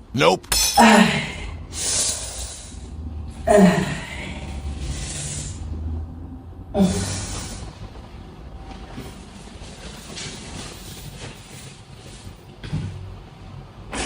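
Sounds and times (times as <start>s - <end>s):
person exhaling heavily: 3.5s - 5.8s.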